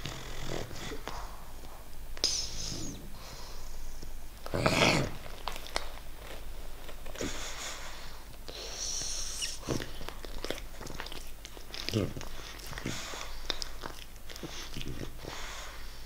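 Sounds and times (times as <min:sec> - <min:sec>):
puppy breathing through nose: 0:00.0 - 0:03.9, 0:07.1 - 0:09.9, 0:12.2 - 0:16.0
puppy snorting: 0:00.0 - 0:05.8, 0:07.1 - 0:16.0.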